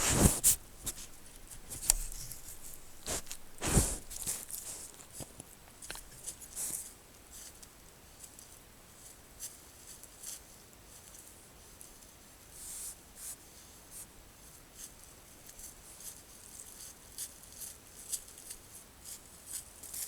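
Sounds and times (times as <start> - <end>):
deer breathing heavily: 0.0 - 6.8.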